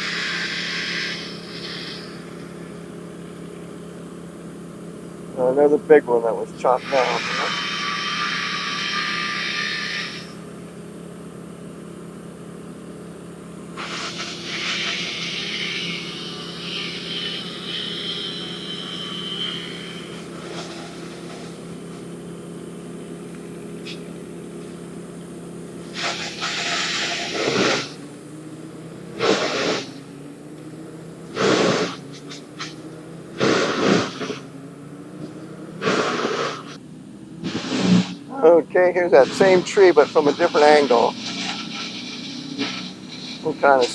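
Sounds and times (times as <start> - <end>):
high hissing: 0.0 - 43.9
machinery engine hum: 0.0 - 43.9
short loud bursts: 13.8 - 21.8, 25.8 - 28.0, 29.1 - 30.2, 31.3 - 32.2, 33.3 - 34.5, 35.8 - 36.8, 37.4 - 38.4, 39.0 - 43.9.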